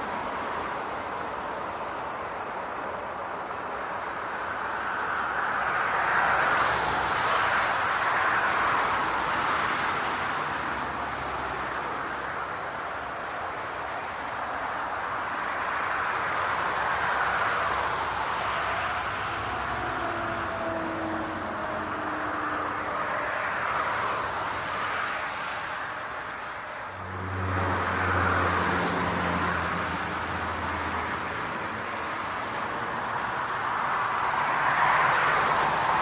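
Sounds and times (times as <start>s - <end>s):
vehicles rushing past: 0.0s - 36.0s.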